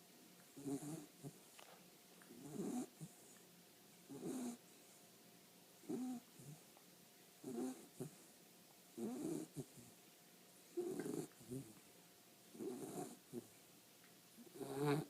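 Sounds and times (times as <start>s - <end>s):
pet snoring: 0.6s - 1.4s, 2.3s - 3.2s, 4.1s - 4.6s, 5.8s - 6.6s, 7.4s - 8.2s, 9.0s - 9.9s, 10.8s - 11.8s, 12.5s - 13.5s, 14.4s - 15.0s.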